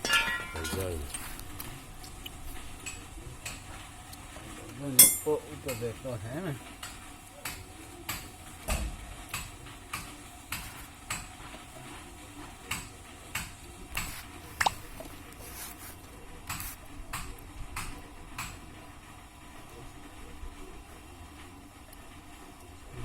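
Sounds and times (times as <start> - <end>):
ringing metallic ping: 0.0 - 0.8, 5.0 - 5.4.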